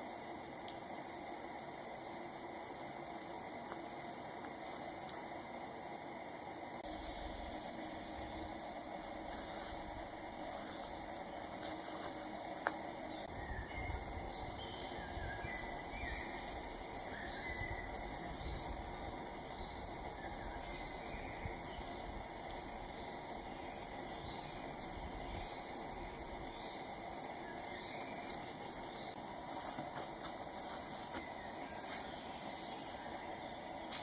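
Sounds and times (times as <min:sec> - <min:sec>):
steady low background noise: 0:00.0 - 0:34.0
small birds calling: 0:09.3 - 0:34.0.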